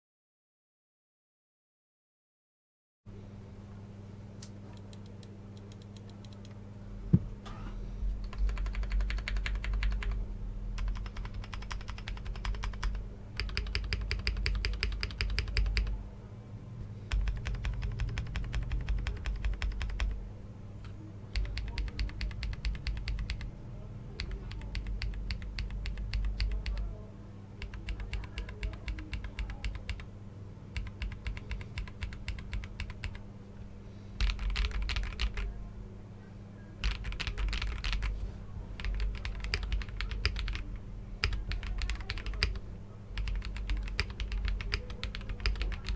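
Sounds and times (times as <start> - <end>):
mechanical keyboard typing: 8.2 - 10.2, 10.8 - 16.0, 17.1 - 20.2, 21.3 - 23.5, 24.2 - 26.9, 27.6 - 30.1, 30.7 - 33.2, 34.2 - 35.5, 36.8 - 38.1, 38.8 - 45.9.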